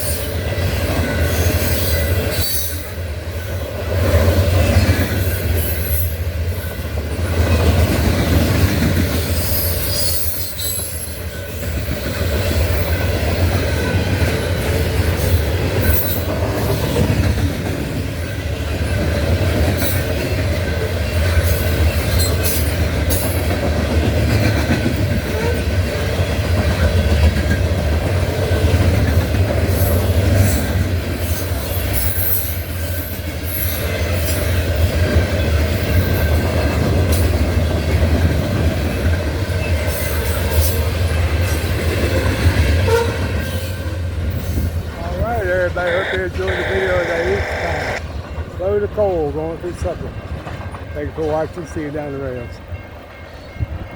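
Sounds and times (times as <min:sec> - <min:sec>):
train wheels squealing: 0:00.0 - 0:03.6, 0:04.6 - 0:07.4, 0:09.2 - 0:17.1, 0:19.8 - 0:23.4, 0:29.7 - 0:34.6
freight train rumbling: 0:00.0 - 0:53.9.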